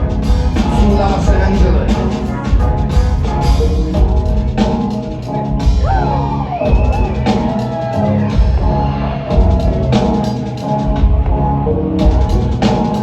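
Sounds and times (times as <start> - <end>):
live rock band playing: 0.0 - 13.0.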